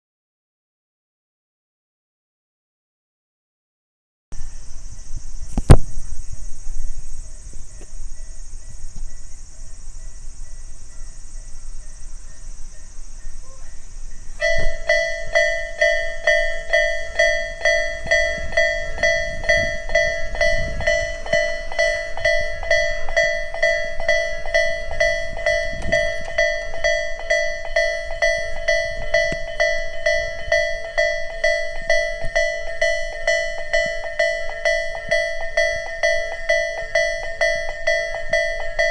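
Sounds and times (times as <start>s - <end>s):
steady high hiss: 4.4s - 38.9s
level crossing bell ringing: 9.1s - 38.9s.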